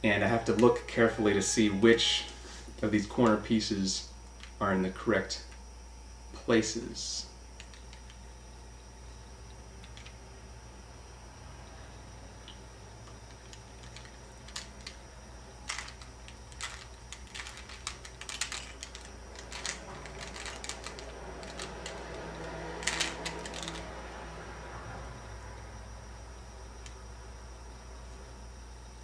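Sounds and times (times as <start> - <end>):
plastic puzzle cube clicking: 15.7 - 22.2, 22.8 - 23.8.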